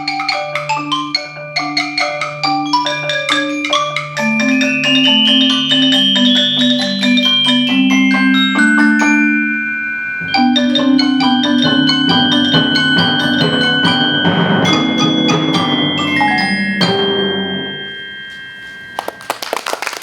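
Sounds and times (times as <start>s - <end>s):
marimba and bell-like mallet notes: 0.0s - 19.3s
applause: 19.0s - 20.0s.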